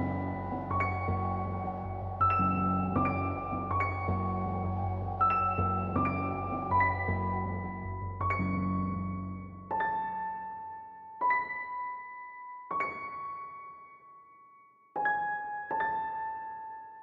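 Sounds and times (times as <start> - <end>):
slow piano notes: 0.0 - 14.1.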